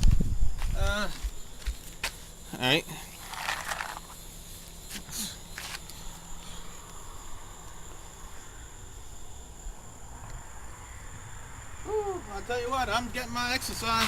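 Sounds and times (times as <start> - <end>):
crickets trilling: 0.0 - 14.0.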